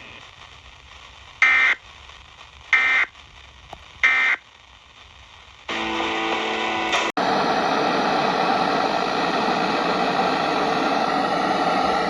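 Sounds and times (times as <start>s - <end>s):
steady hiss with low hum: 0.0s - 5.7s.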